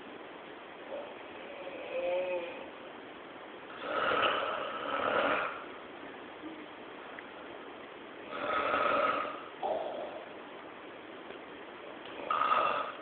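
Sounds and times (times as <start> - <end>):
person snoring: 1.4 - 2.7, 3.7 - 5.7, 8.3 - 10.2, 12.2 - 13.0.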